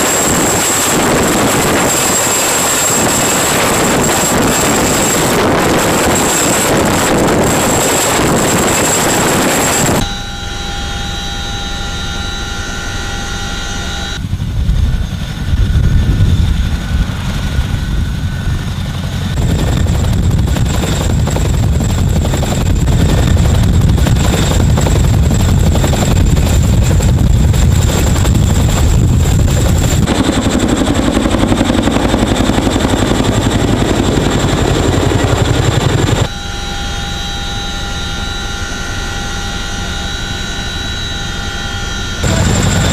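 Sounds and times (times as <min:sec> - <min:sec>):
helicopter rotors beating: 0:00.0 - 0:42.9
helicopter turbine whine: 0:00.0 - 0:42.9.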